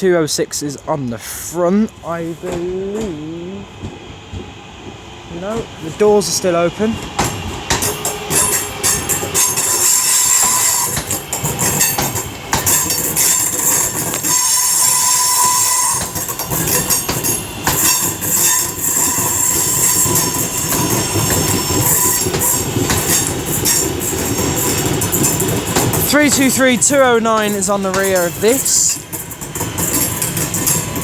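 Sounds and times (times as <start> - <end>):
train wheel and rail noise: 0.0 - 31.0
steady wheel squeal: 8.2 - 11.2, 12.7 - 25.4
clicks over rail joints: 15.4 - 31.0.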